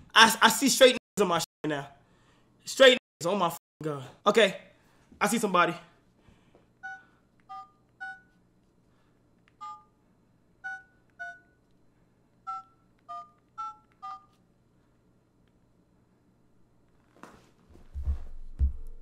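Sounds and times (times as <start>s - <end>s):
touch-tone keypad beeps: 6.8s - 8.3s, 10.6s - 11.6s, 12.5s - 14.3s.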